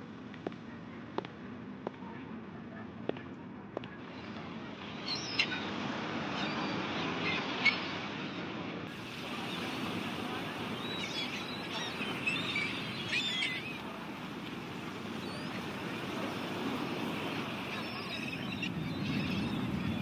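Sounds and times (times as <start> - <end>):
rain hiss: 8.9 - 20.0.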